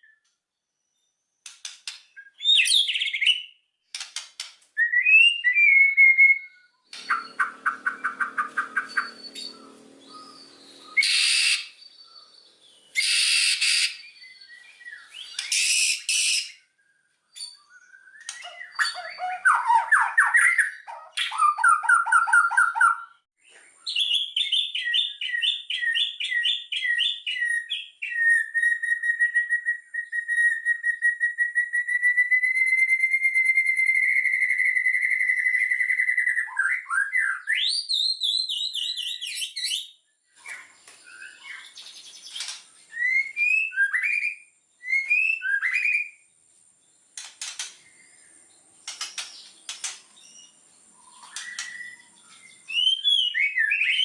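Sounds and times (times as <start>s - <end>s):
bird singing: 0.0s - 3.7s, 4.8s - 54.0s
bird clicks: 48.8s - 50.1s.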